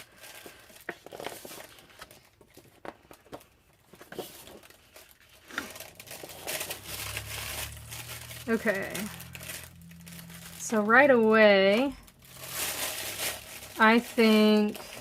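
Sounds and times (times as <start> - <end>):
low hum: 5.7 - 14.8.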